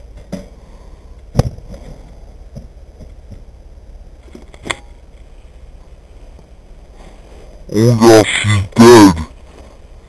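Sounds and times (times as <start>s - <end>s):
low steady rumble: 0.0s - 10.0s
loud thump: 1.3s - 2.0s.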